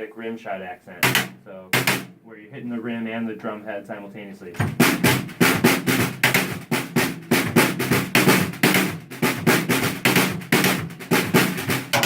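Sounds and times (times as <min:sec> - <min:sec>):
drum kit shuffle groove: 0:00.8 - 0:02.2, 0:04.2 - 0:12.0.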